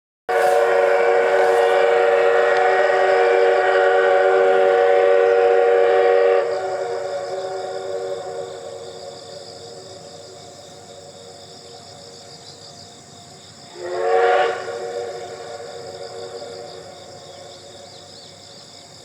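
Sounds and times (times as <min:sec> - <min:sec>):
steam locomotive whistle: 0:00.3 - 0:10.2, 0:13.7 - 0:18.1.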